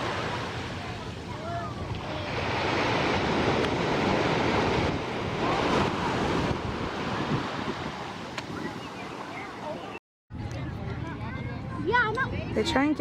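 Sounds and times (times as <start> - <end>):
surf washing up the beach: 0.0 - 10.0
wind buffeting the microphone: 0.9 - 9.2.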